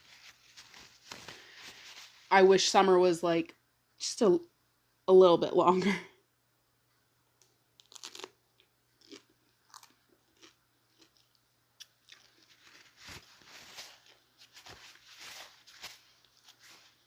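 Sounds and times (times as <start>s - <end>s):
person biting and chewing food: 7.8s - 15.0s.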